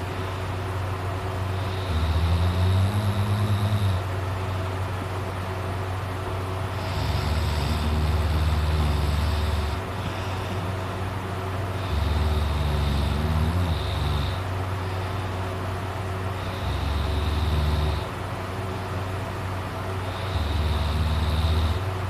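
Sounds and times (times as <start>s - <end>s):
steady hum: 0.0s - 22.0s
person snoring: 1.5s - 4.1s, 6.7s - 10.8s, 11.7s - 14.5s, 16.4s - 18.2s, 20.0s - 21.9s.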